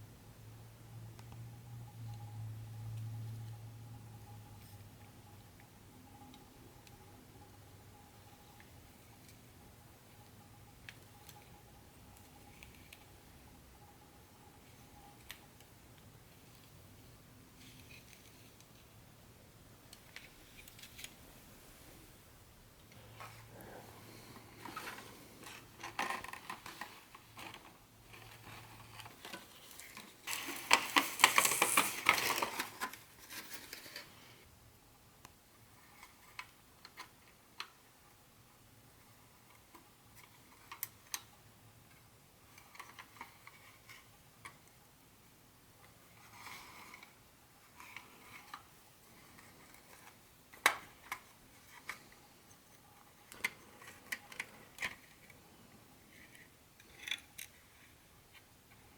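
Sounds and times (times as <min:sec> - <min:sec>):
packaging rustling: 0:23.2 - 0:34.1.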